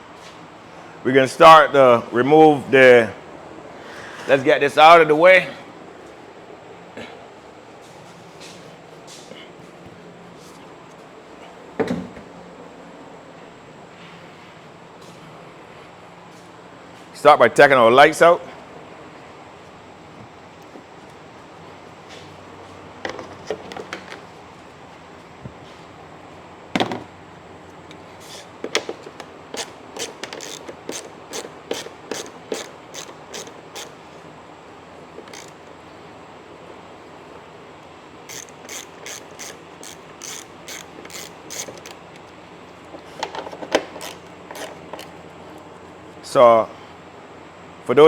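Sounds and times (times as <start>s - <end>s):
ratchet wrench clicking: 28.8s - 34.0s, 35.2s - 35.7s, 38.3s - 42.2s, 43.8s - 45.1s.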